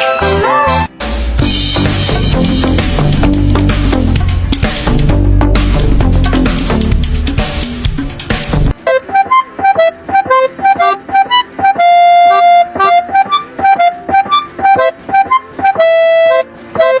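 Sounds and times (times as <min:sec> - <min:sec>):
bouncy keyboard melody: 0:00.0 - 0:17.0.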